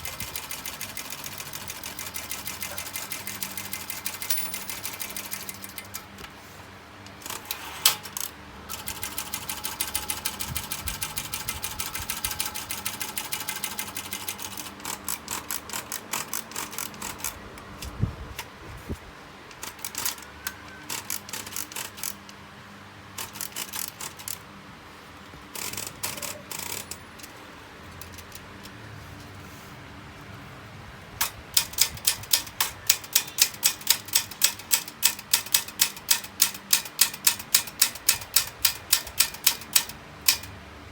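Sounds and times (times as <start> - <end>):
manual typewriter key strikes: 0.0 - 6.2, 7.2 - 17.9, 19.6 - 22.4, 25.5 - 27.3, 31.2 - 40.6.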